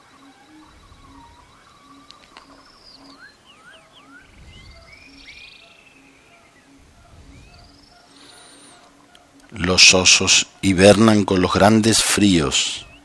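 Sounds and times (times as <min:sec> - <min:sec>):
soft low repeating note: 0:00.0 - 0:10.2
birds chirping and whistling: 0:00.0 - 0:11.2, 0:12.5 - 0:13.0.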